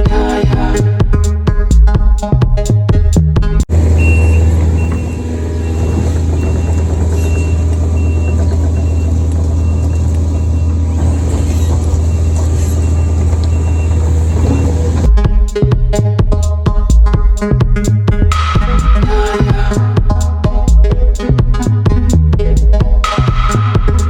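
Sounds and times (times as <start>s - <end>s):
diesel engine running: 3.5s - 24.0s
backup alarm beeping: 3.7s - 15.1s.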